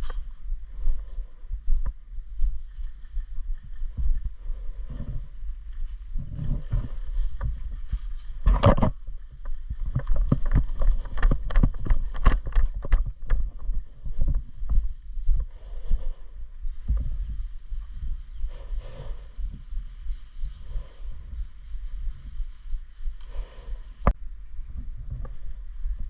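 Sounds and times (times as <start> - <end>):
wind rumble: 0.0 - 26.0
microphone handling noise: 3.9 - 15.5, 16.7 - 17.4, 23.1 - 26.0
sharp clicks and knocks: 8.4 - 13.7.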